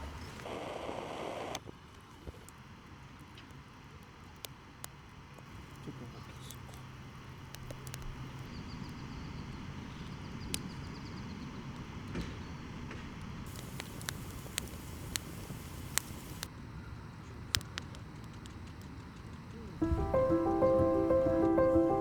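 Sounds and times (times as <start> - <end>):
wood fire crackling: 0.0 - 16.5
low fire rumble: 0.0 - 22.0.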